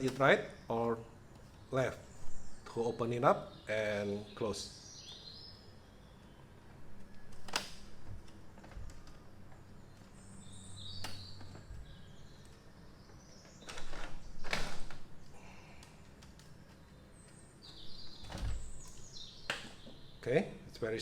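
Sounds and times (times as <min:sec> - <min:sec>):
plastic fan grill clicks: 0:00.0 - 0:00.4, 0:07.0 - 0:09.6, 0:11.0 - 0:12.6, 0:18.4 - 0:20.0
birds chirping faintly: 0:00.0 - 0:21.0.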